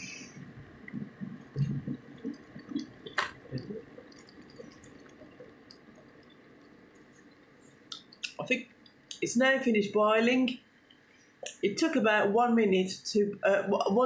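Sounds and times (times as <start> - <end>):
kettle water bubbling and popping: 0.0 - 9.2.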